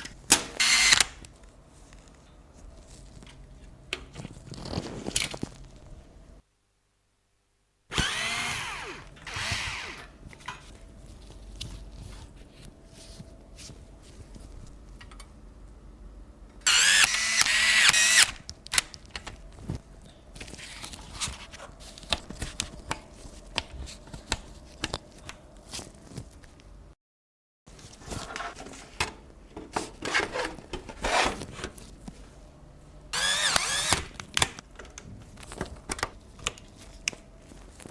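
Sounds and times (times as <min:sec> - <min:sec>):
electric screwdriver motor whining: 0:00.6 - 0:01.2, 0:07.9 - 0:10.1, 0:16.7 - 0:18.9, 0:33.2 - 0:34.1.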